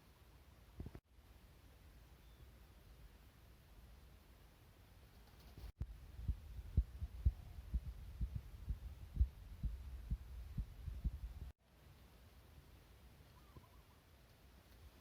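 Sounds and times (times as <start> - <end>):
dull low thuds: 5.8 - 11.6.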